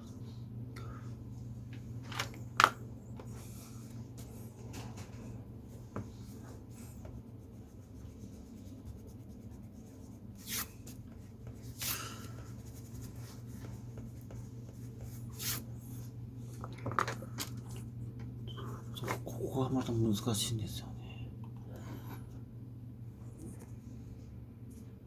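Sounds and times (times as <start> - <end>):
steady low hum: 0.0 - 25.0
pen scratching on paper: 7.4 - 14.8
pen swishes on paper: 10.4 - 12.0, 12.6 - 15.7.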